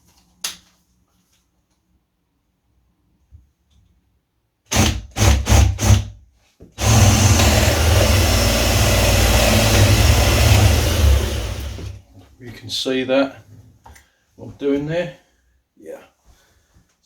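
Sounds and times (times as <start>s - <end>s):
power drill boring into wood: 4.7s - 6.1s, 6.8s - 12.0s.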